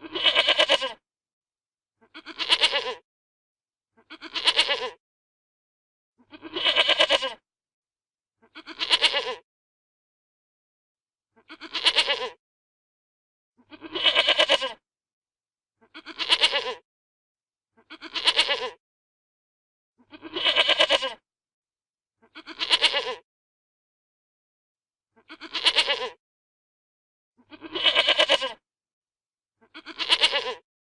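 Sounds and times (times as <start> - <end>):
goat bleating: 0.0 - 1.0, 2.0 - 3.0, 4.0 - 5.0, 6.2 - 7.4, 8.4 - 9.4, 11.4 - 12.4, 13.7 - 14.8, 15.8 - 16.8, 17.8 - 18.8, 20.0 - 21.2, 22.2 - 23.2, 25.2 - 26.2, 27.5 - 28.6, 29.6 - 30.6.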